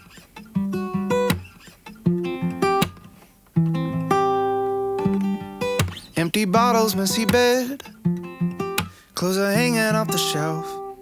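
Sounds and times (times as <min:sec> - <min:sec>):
acoustic guitar chords: 0:00.0 - 0:11.0
sharp guitar strums: 0:03.7 - 0:11.0.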